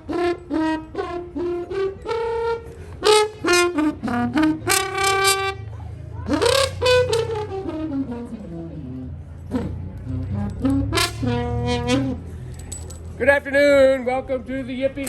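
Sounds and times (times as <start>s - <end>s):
brass instrument tune: 0.0s - 5.6s, 6.3s - 12.3s.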